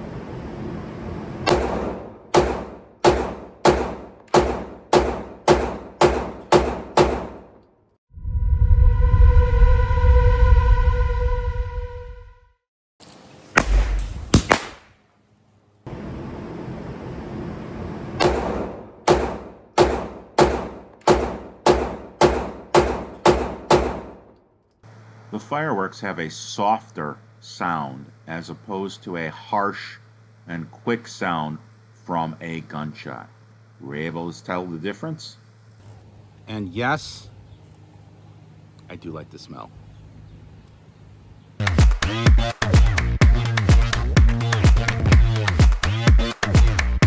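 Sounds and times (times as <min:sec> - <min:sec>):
pistol shots: 0:01.5 - 0:07.6, 0:13.6 - 0:15.0, 0:18.2 - 0:24.3
music: 0:08.6 - 0:12.6, 0:41.6 - 0:47.0.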